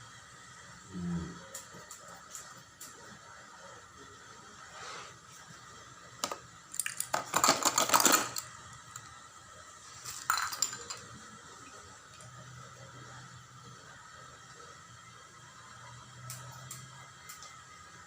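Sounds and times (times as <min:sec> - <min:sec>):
small hard pieces clinking: 0:06.2 - 0:08.5, 0:10.0 - 0:11.1.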